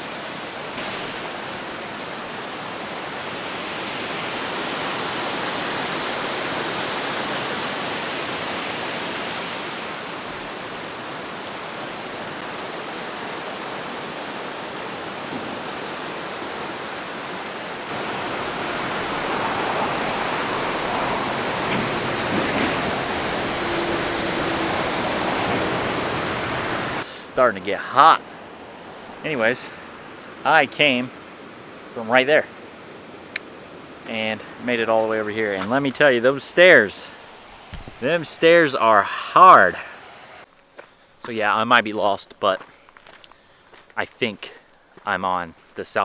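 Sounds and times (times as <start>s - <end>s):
waterfall roaring: 0.0s - 32.8s, 33.8s - 40.4s.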